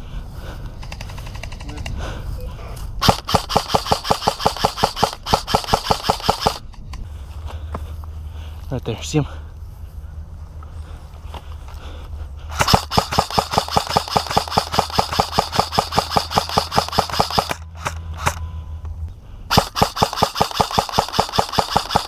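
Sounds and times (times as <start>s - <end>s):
airsoft rifle full-auto fire: 3.0s - 6.6s, 12.5s - 18.4s, 19.5s - 22.0s.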